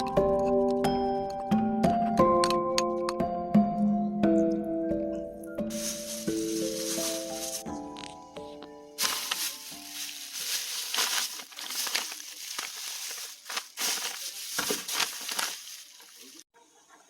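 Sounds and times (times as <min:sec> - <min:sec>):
loud rustles: 0:05.7 - 0:07.7, 0:09.0 - 0:16.4
crinkling handling noise: 0:05.7 - 0:16.5.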